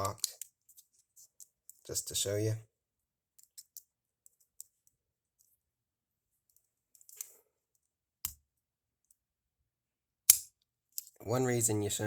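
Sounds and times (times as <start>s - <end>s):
lock pick clicking in padlock: 10.3s - 11.1s.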